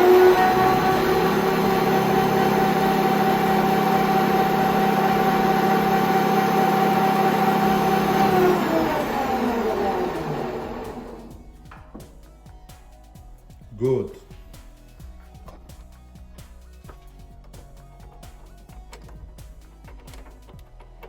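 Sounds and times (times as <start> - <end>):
lathe motor whine: 0.0 - 11.5.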